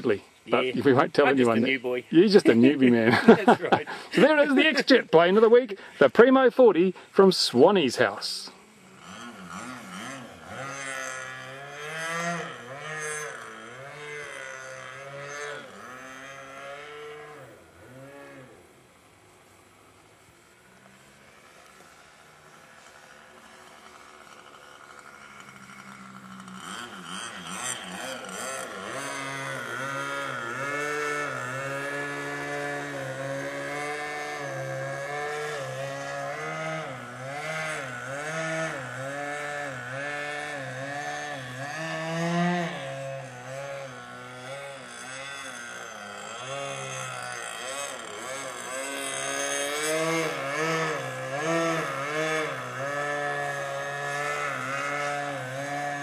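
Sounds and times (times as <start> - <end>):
model plane engine revving: 0.0 - 56.0.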